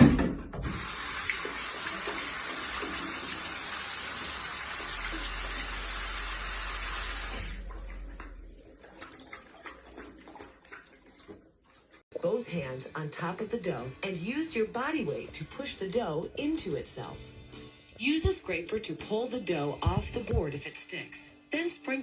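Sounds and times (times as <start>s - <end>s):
running water rushing: 0.6s - 11.3s.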